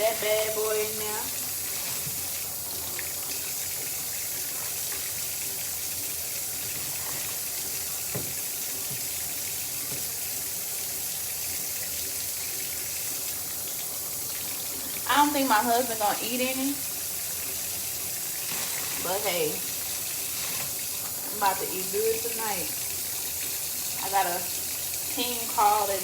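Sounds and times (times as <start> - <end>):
tap running into sink: 0.0 - 10.5.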